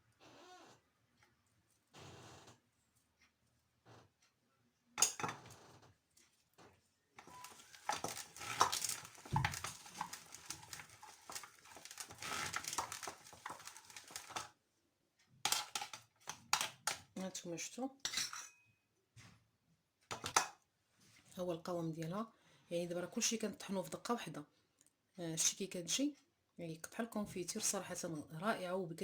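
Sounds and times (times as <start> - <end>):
hand grinder grinding: 7.2 - 14.5.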